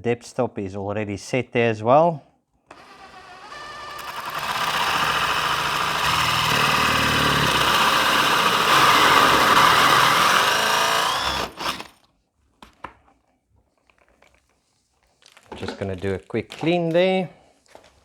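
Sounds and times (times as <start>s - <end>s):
power drill boring into wood: 2.7s - 12.0s.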